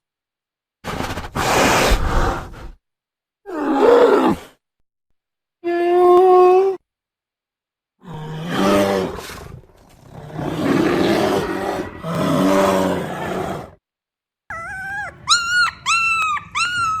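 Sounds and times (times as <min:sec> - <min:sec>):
bear growls: 0:08.0 - 0:13.8, 0:14.5 - 0:15.9
high wavering cries: 0:14.5 - 0:17.0.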